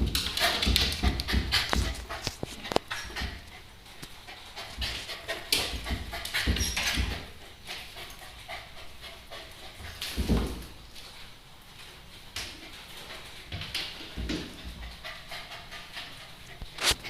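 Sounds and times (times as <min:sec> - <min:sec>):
dog panting: 0:00.0 - 0:10.2, 0:12.6 - 0:17.0.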